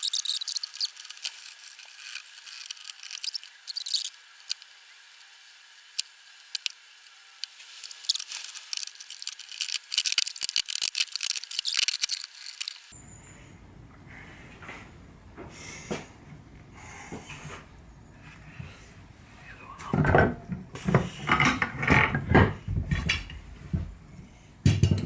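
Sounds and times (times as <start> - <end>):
glue spreading scraping and smacking: 0.0 - 5.3, 5.9 - 12.9.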